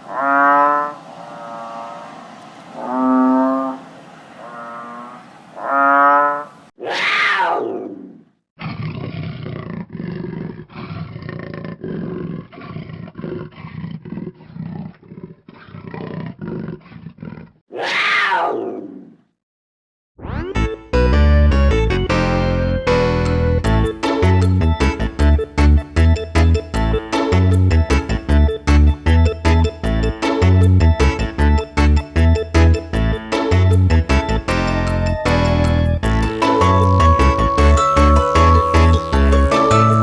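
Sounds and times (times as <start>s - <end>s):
cattle mooing: 0.0s - 2.2s, 2.8s - 6.6s, 36.0s - 40.0s
big cat roaring and growling: 2.8s - 17.6s, 36.0s - 40.0s.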